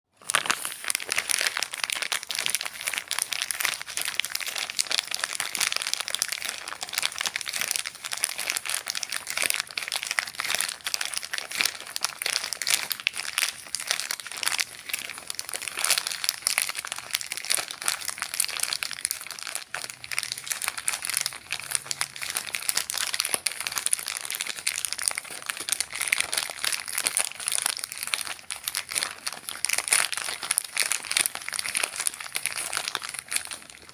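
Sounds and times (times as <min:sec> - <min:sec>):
paper packet crinkling: 0:00.1 - 0:33.9.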